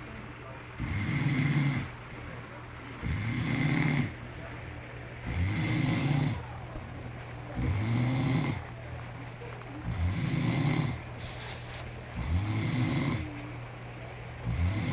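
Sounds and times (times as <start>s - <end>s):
steady low hum: 0.0s - 14.9s
man snoring: 0.8s - 2.0s, 3.0s - 4.2s, 5.3s - 6.5s, 7.6s - 8.7s, 9.9s - 11.0s, 12.2s - 13.3s, 14.4s - 14.9s.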